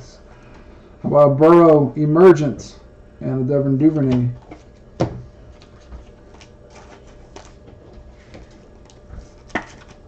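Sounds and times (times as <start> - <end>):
trading cards clicking and rustling: 5.6 - 7.7.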